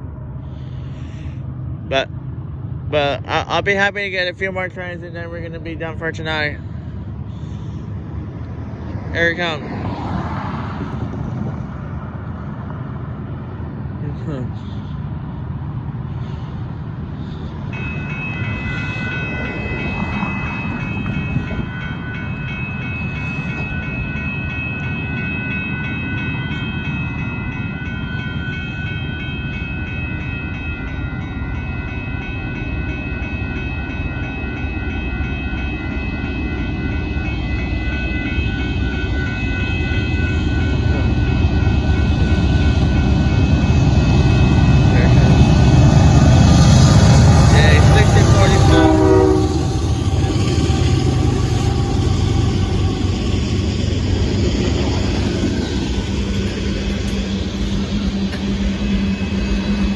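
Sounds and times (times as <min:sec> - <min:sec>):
crossing bell ringing: 0:00.0 - 0:59.9
freight train rumbling: 0:00.0 - 0:59.9.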